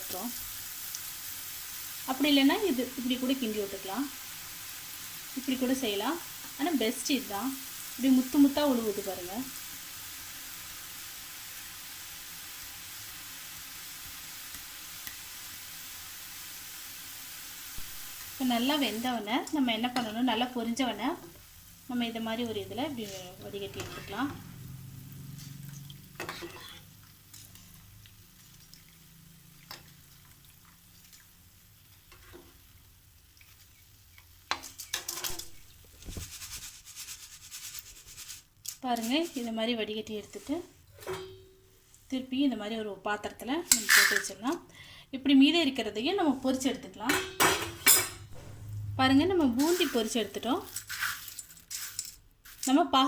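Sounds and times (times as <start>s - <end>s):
batter frying in hot oil: 0.0s - 39.9s, 49.6s - 53.0s
metal ladle scraping and clinking pan: 23.0s - 24.6s, 25.4s - 27.8s, 40.9s - 41.5s, 43.7s - 44.2s.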